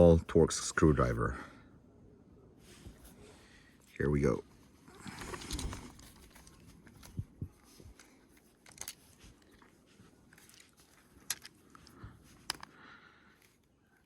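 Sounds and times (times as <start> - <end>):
screwdriver scraping and turning: 5.2 - 12.8.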